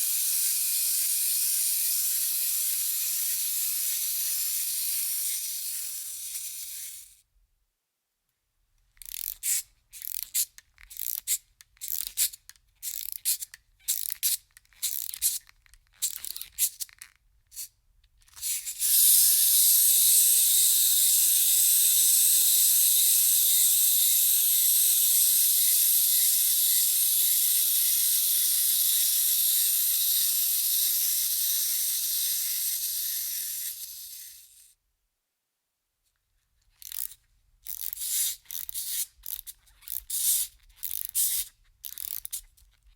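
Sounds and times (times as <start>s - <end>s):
wind-up key ratcheting clicks: 0.0s - 7.1s, 9.0s - 34.6s, 36.7s - 42.9s
clockwork mechanism whirring: 0.0s - 7.2s, 18.3s - 34.7s, 36.8s - 42.4s.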